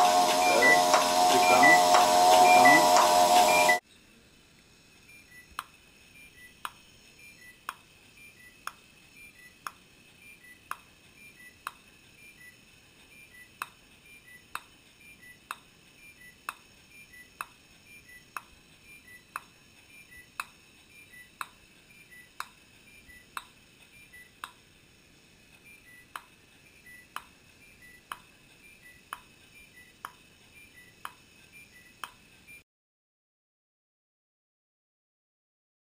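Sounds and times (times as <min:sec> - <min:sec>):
short high beeps: 0:00.0 - 0:03.8
faint regular clicks: 0:05.5 - 0:05.8, 0:06.6 - 0:06.9, 0:07.6 - 0:07.9, 0:08.5 - 0:11.9, 0:13.4 - 0:15.7, 0:16.3 - 0:24.7, 0:25.5 - 0:32.3.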